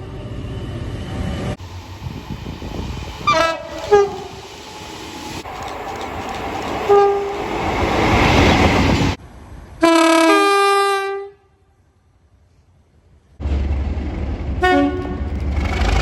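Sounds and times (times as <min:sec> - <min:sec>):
train rumble and rail noise: 0:00.0 - 0:11.4, 0:12.2 - 0:16.0
train horn blast: 0:03.2 - 0:04.3, 0:06.9 - 0:07.4, 0:09.8 - 0:11.6, 0:14.6 - 0:15.5.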